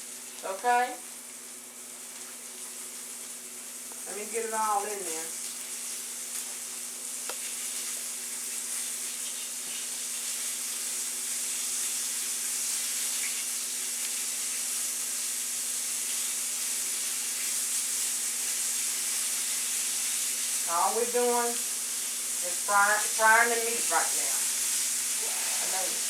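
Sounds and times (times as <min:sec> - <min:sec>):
meat frying in grease: 0:00.0 - 0:26.0.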